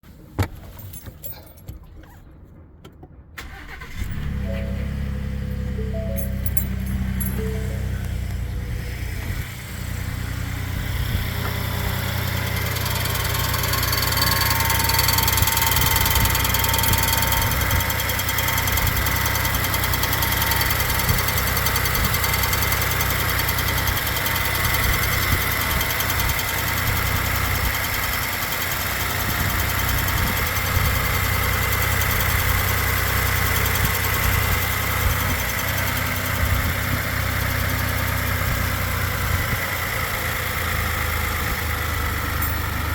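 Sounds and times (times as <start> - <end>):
truck engine running: 3.4 - 42.9
thin high-pitched tone: 4.3 - 8.8.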